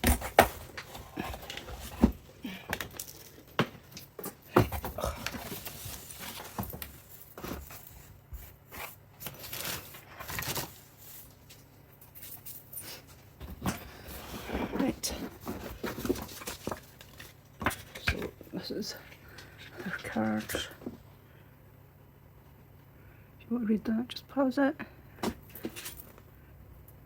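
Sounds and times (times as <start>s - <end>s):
packaging tearing and rustling: 4.9s - 11.6s.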